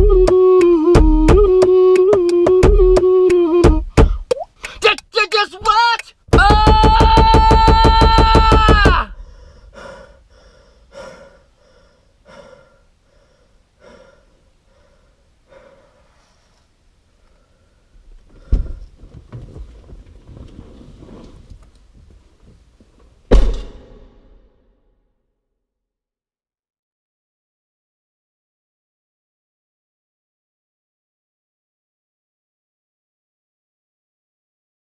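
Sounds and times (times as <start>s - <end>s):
low thump: 18.4s - 20.4s, 23.3s - 24.5s
short loud hit: 23.3s - 24.5s.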